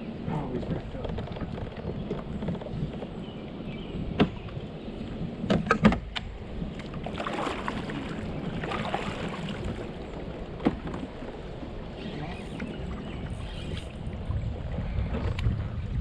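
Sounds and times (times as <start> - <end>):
knocks on a kayak: 4.1 - 4.6, 5.4 - 6.1, 10.6 - 11.0
water swishing: 6.4 - 15.4.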